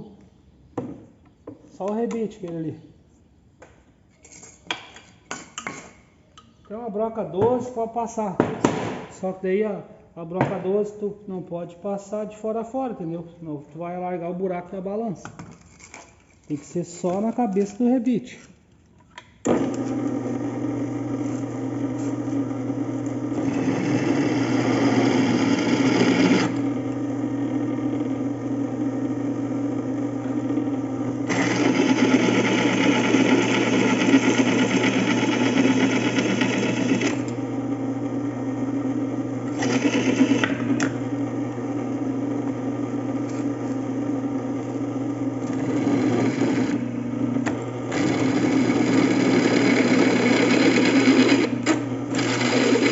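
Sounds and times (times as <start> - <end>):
drill press motor humming: 19.4 - 52.9
drill bit grinding metal: 19.5 - 52.9.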